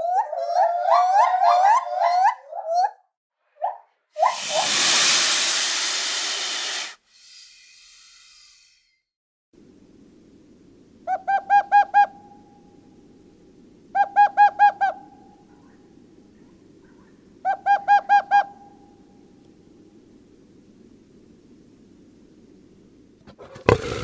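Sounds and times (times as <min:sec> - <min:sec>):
low background noise: 0:09.6 - 0:23.3.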